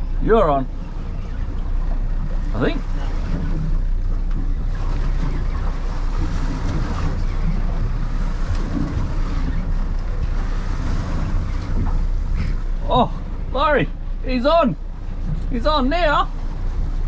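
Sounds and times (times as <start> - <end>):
low rumble: 0.0 - 17.0
waves washing against hull: 0.0 - 17.0
wind buffeting microphone: 0.0 - 17.0.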